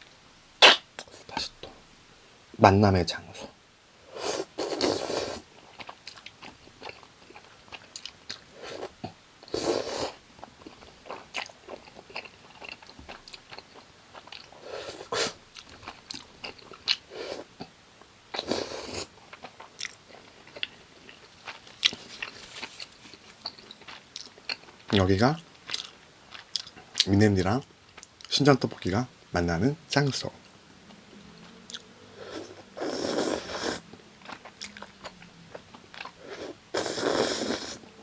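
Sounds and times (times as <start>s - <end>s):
wet mouth clicks: 0.6s - 1.1s
crunchy chewing: 4.2s - 17.5s, 18.4s - 27.1s, 30.9s - 37.8s.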